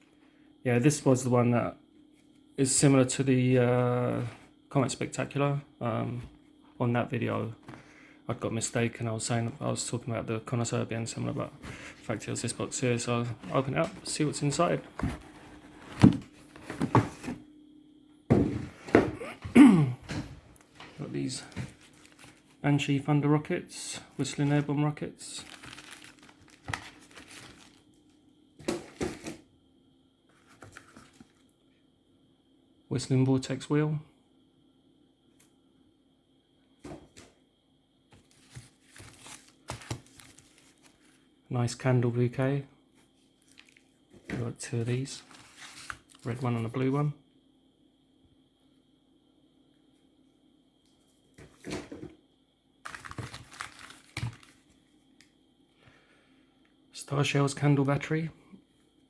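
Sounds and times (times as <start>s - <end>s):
packaging rustling and crinkling: 20.6s - 22.6s, 25.3s - 29.4s, 38.2s - 41.2s, 43.4s - 43.8s, 45.2s - 46.4s, 52.8s - 54.8s.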